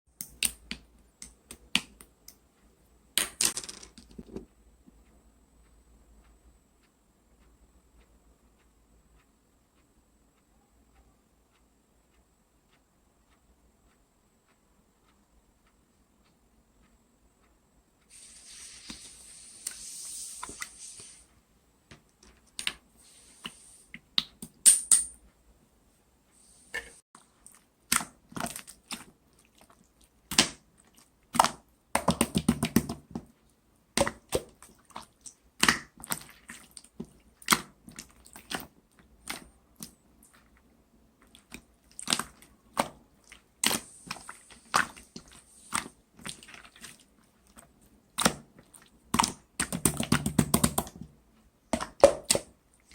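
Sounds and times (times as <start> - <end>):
slime squishing with clicks and pops: 0.2 - 2.4, 27.3 - 52.9.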